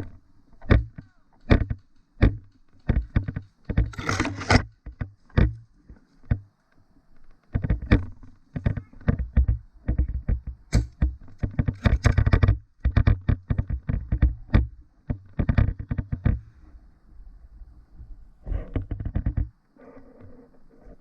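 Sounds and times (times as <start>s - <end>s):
camera handling knocks and rustles: 0.0s - 5.6s.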